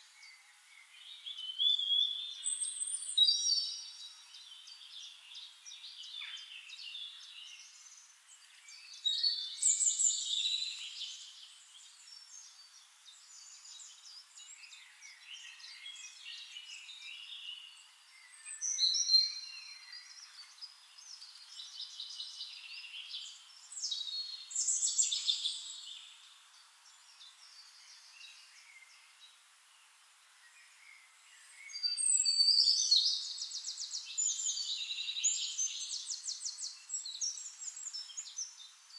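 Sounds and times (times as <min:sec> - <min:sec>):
quiet bird chirps: 0:00.0 - 0:38.9
songbirds warbling and trilling: 0:04.4 - 0:38.9.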